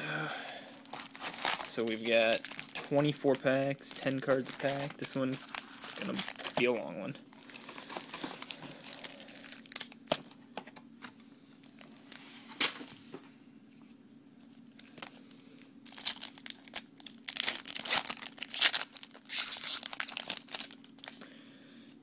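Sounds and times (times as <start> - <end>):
foil wrapper tearing and crinkling: 0.7 - 6.8, 7.4 - 10.3, 15.8 - 21.2.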